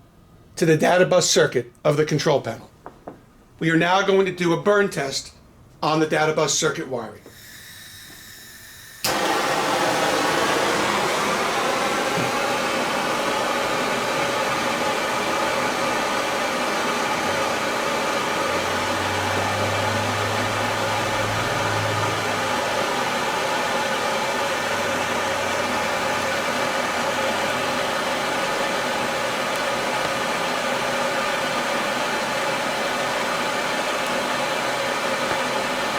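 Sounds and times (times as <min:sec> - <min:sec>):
gas torch flame hissing: 0:07.2 - 0:35.9.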